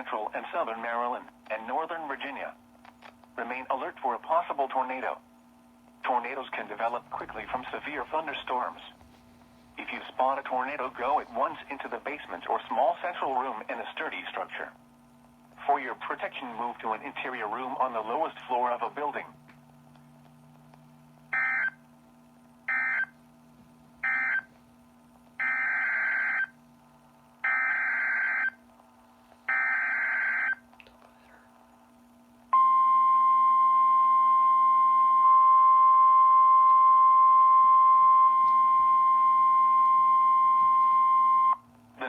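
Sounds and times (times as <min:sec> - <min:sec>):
steady warning alarm tone: 0:21.3 - 0:21.8, 0:22.7 - 0:23.2, 0:24.0 - 0:24.5, 0:25.4 - 0:26.6, 0:27.4 - 0:28.6, 0:29.5 - 0:30.6.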